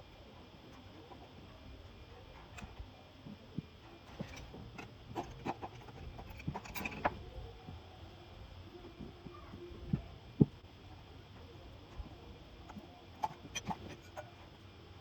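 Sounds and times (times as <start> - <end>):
metal parts clicking and knocking: 4.0 - 7.2, 12.7 - 14.4.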